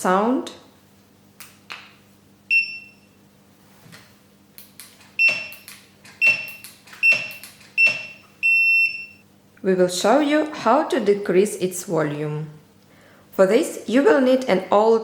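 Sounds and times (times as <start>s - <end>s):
high-pitched buzzer beeps: 2.5s - 3.2s, 5.2s - 9.2s.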